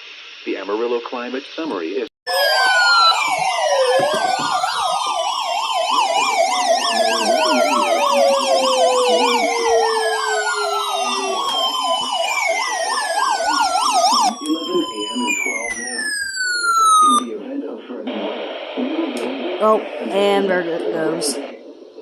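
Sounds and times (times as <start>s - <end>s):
wailing sirens: 2.3s - 17.4s
yelping siren: 2.3s - 17.4s.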